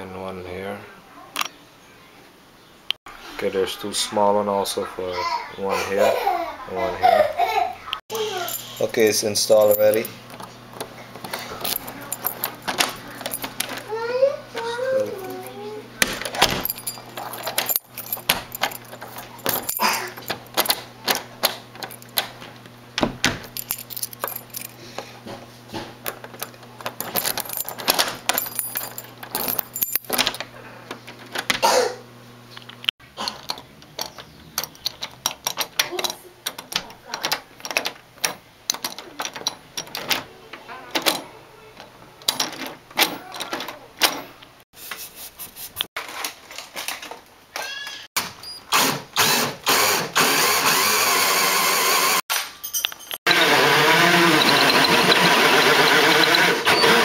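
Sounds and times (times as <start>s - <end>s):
door lock and keys rattling: 8.2s - 14.0s, 14.6s - 31.7s, 32.6s - 44.7s, 52.3s - 53.3s.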